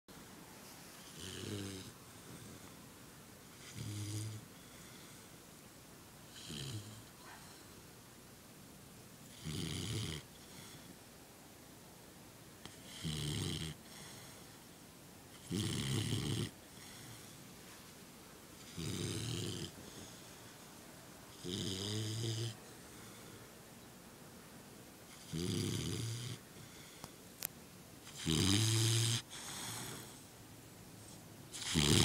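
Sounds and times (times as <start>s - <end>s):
puppy snoring: 1.0s - 2.8s, 3.4s - 5.4s, 6.3s - 7.8s, 9.2s - 10.9s, 12.6s - 14.7s, 15.3s - 17.4s, 18.6s - 20.6s, 21.3s - 23.4s, 25.1s - 27.0s, 28.0s - 30.3s, 31.0s - 32.0s.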